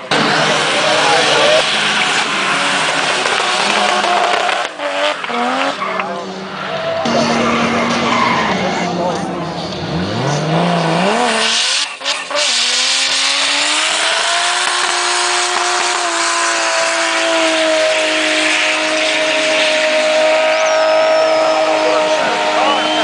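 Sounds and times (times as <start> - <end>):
car engine revving: 0.0 - 23.0
tyres squealing: 16.0 - 23.0.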